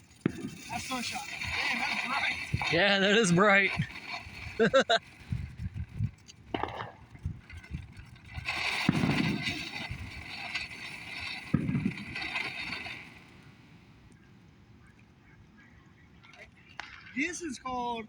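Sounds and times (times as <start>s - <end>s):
firework fountain hissing: 0.0s - 14.1s.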